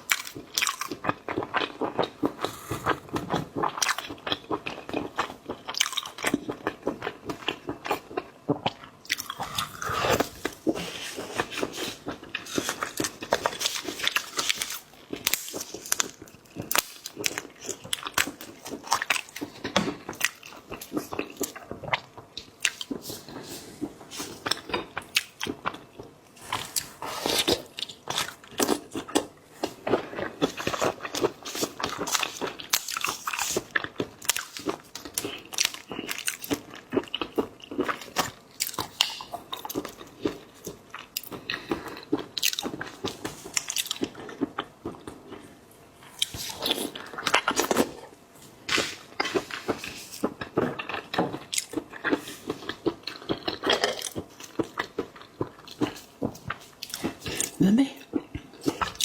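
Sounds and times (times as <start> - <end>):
biting and chewing seafood: 0.0 - 59.0
wet mouth clicks: 2.2 - 3.4.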